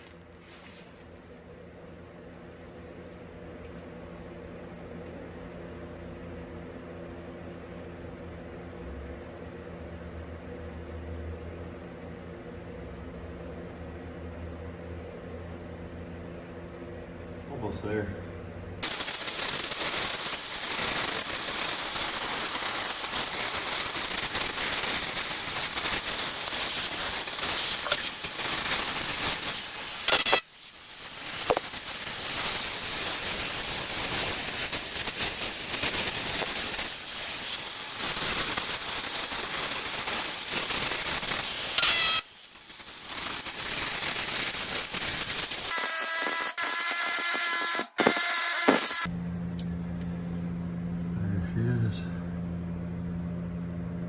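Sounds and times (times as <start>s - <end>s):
cutting torch hissing: 18.8s - 49.1s.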